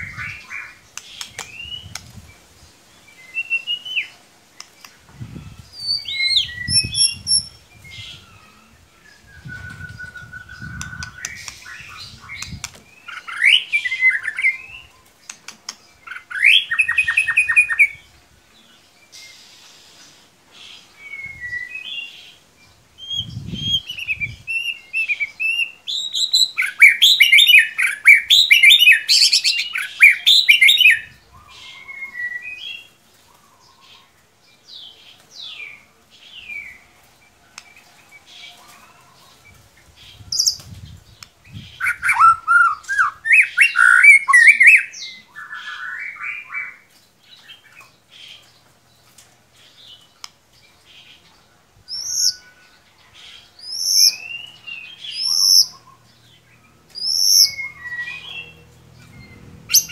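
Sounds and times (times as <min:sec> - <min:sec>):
songbird whistling and chattering: 0:03.3 - 0:08.6, 0:09.2 - 0:14.9, 0:23.0 - 0:32.6, 0:41.5 - 0:46.7, 0:57.0 - 0:58.6.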